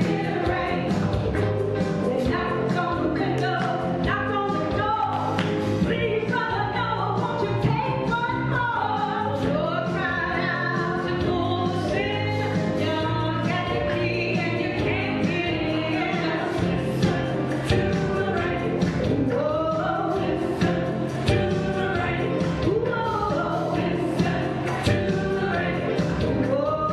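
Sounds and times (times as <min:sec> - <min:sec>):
gospel choir singing: 0:00.0 - 0:01.4, 0:14.6 - 0:26.8
instrumental backing with beat: 0:00.0 - 0:26.9.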